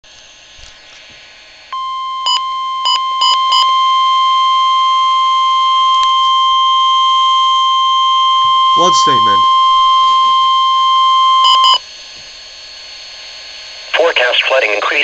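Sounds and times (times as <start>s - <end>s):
steady alarm tone: 1.4s - 14.0s
short beeps: 1.8s - 11.8s.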